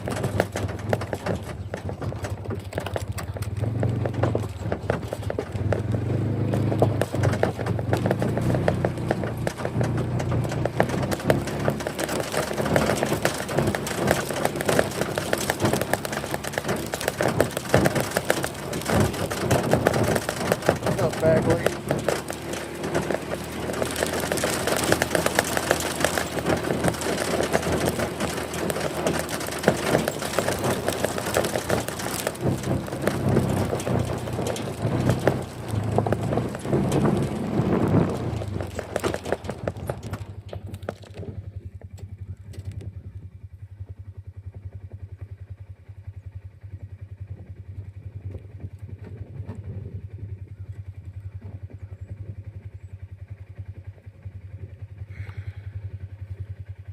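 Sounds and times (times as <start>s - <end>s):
motor vehicle running: 0.0s - 56.9s.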